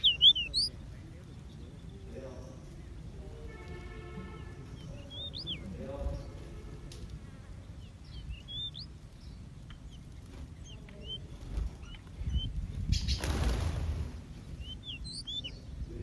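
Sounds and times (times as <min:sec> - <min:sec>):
small birds chirping: 0:00.0 - 0:16.0
wings flapping: 0:03.6 - 0:15.5.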